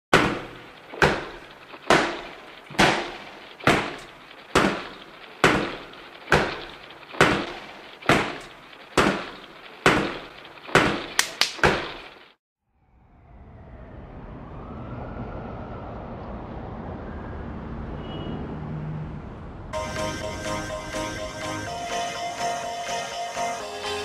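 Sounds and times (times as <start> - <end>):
sharp bangs: 0.1 - 12.1.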